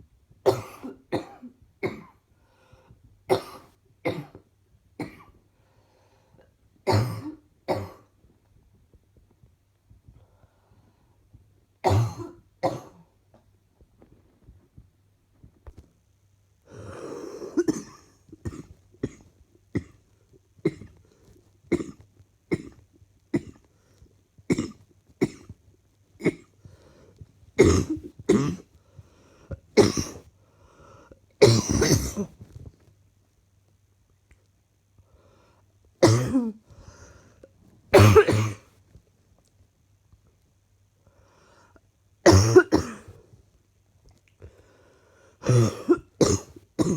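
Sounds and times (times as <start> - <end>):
person coughing: 0.5 - 2.2, 3.3 - 4.4, 6.9 - 8.1, 11.9 - 13.0, 16.8 - 20.0, 27.6 - 28.7, 29.8 - 30.2, 31.4 - 32.4, 36.0 - 36.6, 38.0 - 38.7, 42.3 - 43.1, 45.4 - 46.9.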